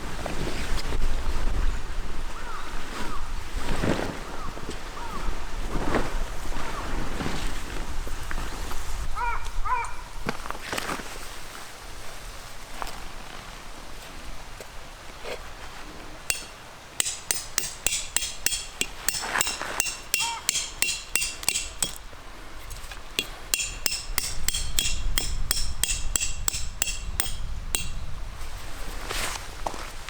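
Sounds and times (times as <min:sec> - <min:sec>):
tent pegs being hammered: 0:16.3 - 0:28.2.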